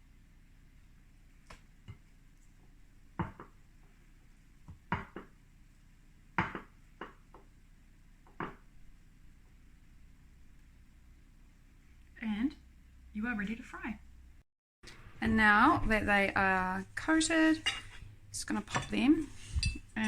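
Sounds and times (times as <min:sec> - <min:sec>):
knocks and taps against a bowl: 0:03.2 - 0:03.6.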